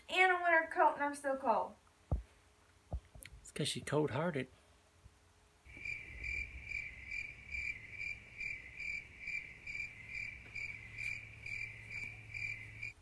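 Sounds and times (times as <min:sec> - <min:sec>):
cricket chirping: 0:05.7 - 0:13.0.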